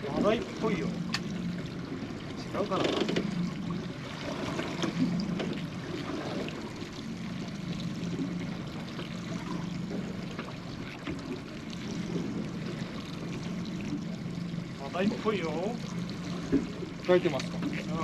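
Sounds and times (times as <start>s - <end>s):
low hum: 0.0s - 18.0s
water lapping against boat hull: 0.0s - 18.0s.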